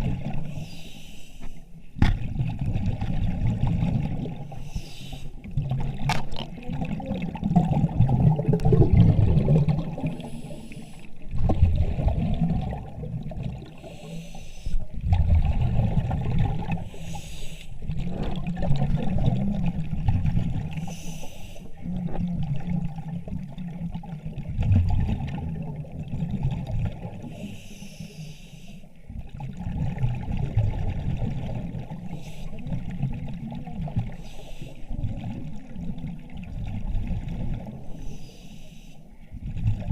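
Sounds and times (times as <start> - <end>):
low bubbling underwater: 2.0 - 4.6, 5.4 - 10.6, 11.2 - 13.9, 14.9 - 16.9, 17.8 - 20.8, 21.8 - 27.4, 29.1 - 34.2, 34.9 - 37.9, 39.3 - 39.9.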